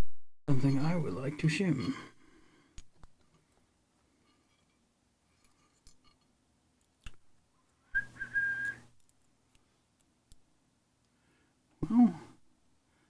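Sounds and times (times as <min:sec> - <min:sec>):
high whistle: 0:07.9 - 0:08.8.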